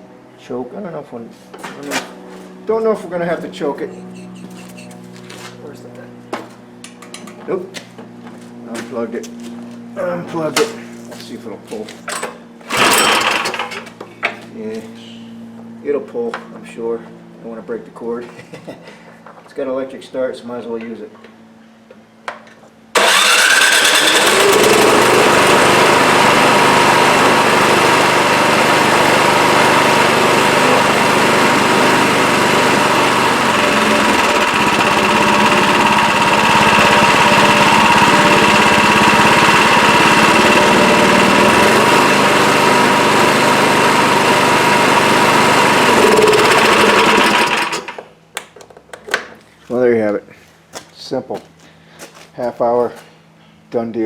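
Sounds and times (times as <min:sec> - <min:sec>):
small gasoline engine running: 0:03.8 - 0:05.1, 0:12.2 - 0:13.9, 0:22.9 - 0:48.1
electric starter: 0:12.1 - 0:14.0, 0:22.9 - 0:48.2.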